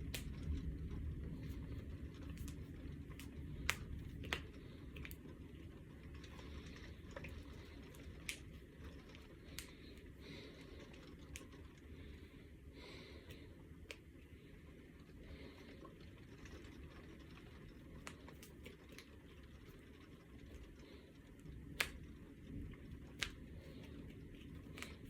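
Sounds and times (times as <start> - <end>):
knuckles cracking: 0.0 - 0.7, 1.4 - 5.3, 6.2 - 11.7, 21.7 - 22.2, 23.1 - 25.0.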